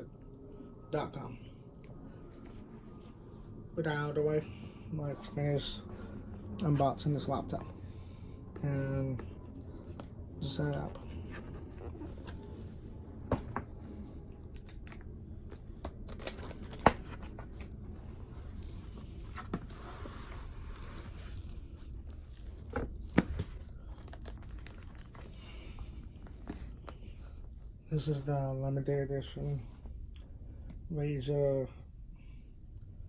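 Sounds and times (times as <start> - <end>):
packaging crinkling and rustling: 9.7 - 27.6
packaging tearing: 16.0 - 17.5, 20.6 - 25.4.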